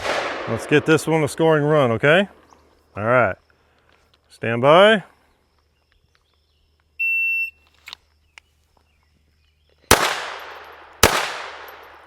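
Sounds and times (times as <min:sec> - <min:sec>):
handgun shots: 0:09.9 - 0:12.0.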